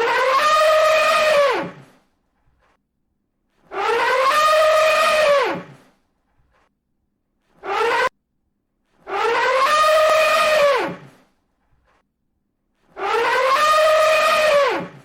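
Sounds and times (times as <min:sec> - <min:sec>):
elephant trumpeting: 0:00.0 - 0:02.0, 0:03.6 - 0:05.9, 0:07.6 - 0:08.1, 0:09.0 - 0:11.2, 0:12.9 - 0:15.0.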